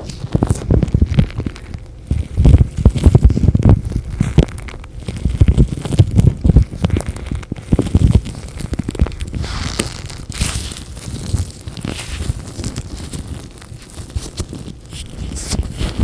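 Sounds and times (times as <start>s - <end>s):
latex gloves crinkling: 0.0s - 16.0s
soft low thumps: 0.0s - 16.0s
hissing rubbing of gloves: 5.0s - 16.0s.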